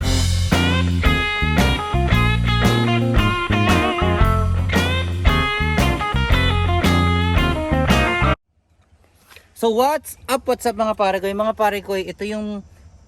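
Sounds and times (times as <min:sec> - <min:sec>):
guitar-led rock music: 0:00.0 - 0:08.4.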